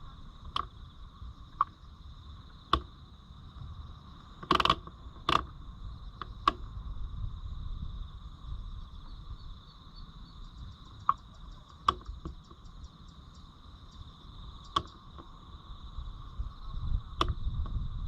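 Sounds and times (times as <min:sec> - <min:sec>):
crickets trilling: 0:00.0 - 0:18.0
sharp clicks: 0:04.4 - 0:05.5, 0:11.0 - 0:12.6, 0:14.7 - 0:15.3, 0:17.2 - 0:17.8.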